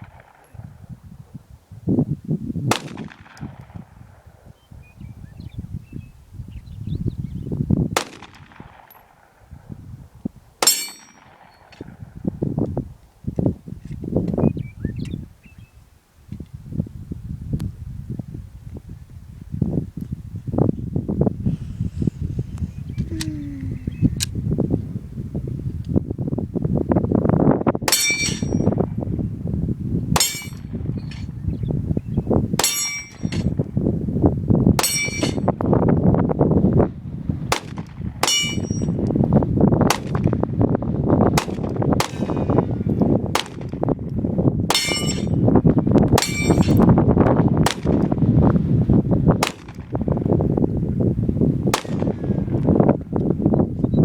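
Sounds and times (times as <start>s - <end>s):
gunshots: 2.7s - 3.6s, 8.0s - 9.3s, 41.4s - 42.6s, 49.4s - 50.0s, 51.8s - 52.2s
pistol shots: 2.7s - 3.9s, 8.0s - 9.4s, 41.4s - 42.7s, 43.3s - 43.9s, 47.7s - 48.1s, 49.4s - 50.0s, 51.8s - 52.3s
steel plate ringing clang: 10.6s - 11.7s, 27.9s - 28.8s, 30.2s - 31.3s, 32.6s - 33.5s, 34.8s - 35.5s, 38.2s - 39.0s, 44.7s - 45.4s, 46.2s - 46.8s
low rumbling noise: 20.8s - 26.6s.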